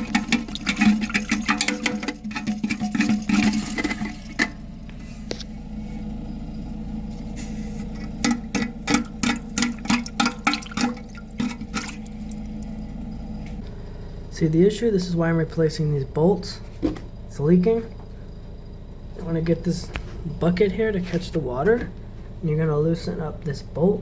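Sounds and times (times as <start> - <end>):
toilet flushing: 0.0 - 4.9, 7.4 - 13.4
toilet tank refilling: 0.0 - 4.9, 7.9 - 13.2.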